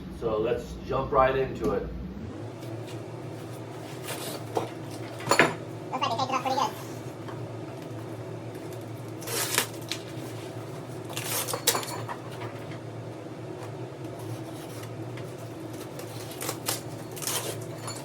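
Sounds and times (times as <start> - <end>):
steady low hum: 0.0 - 18.0
packing tape torn off cardboard: 8.7 - 10.1, 15.8 - 17.7.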